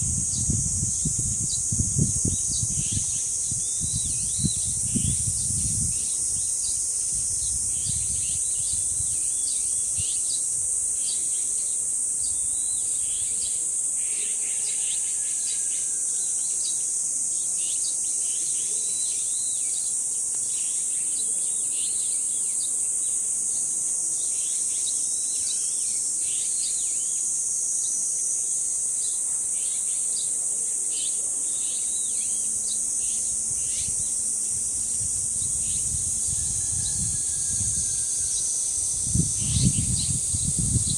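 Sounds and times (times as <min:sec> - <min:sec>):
wind rumble on microphone: 0:00.0 - 0:10.8, 0:33.2 - 0:40.9
cicadas droning: 0:00.0 - 0:40.9.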